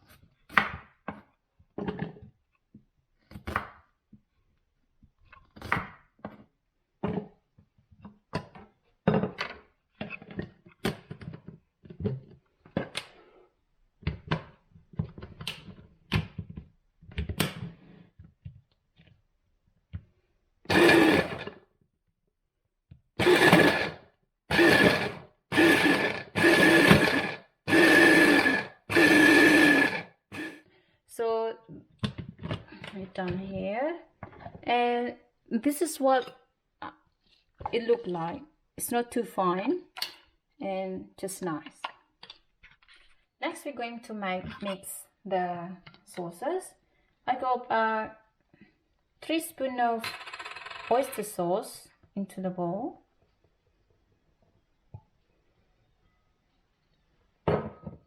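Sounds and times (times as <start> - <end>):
electric food chopper whining: 20.7 - 21.6, 23.2 - 30.6.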